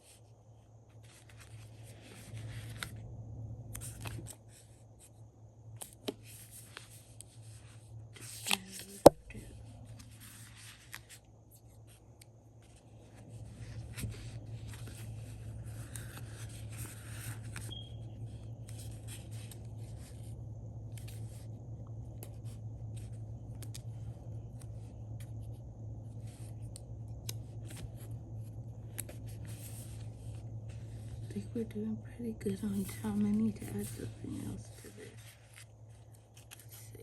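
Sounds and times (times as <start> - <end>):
steady low hum: 0.0 - 37.0.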